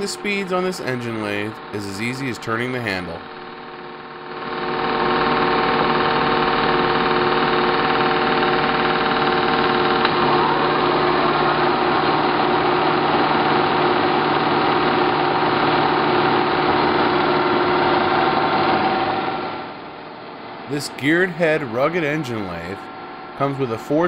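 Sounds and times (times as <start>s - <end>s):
lathe gears whining: 0.0s - 19.7s
lathe click: 5.2s - 10.4s.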